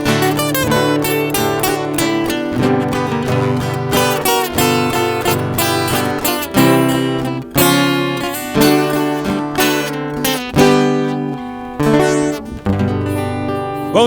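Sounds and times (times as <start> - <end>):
acoustic guitars strumming: 0.0 - 14.0.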